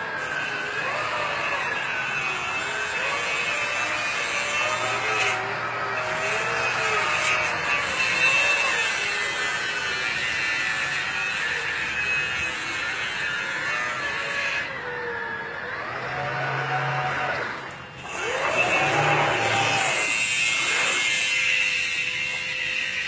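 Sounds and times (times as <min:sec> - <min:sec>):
model boat motor whining: 0:11.0 - 0:23.0.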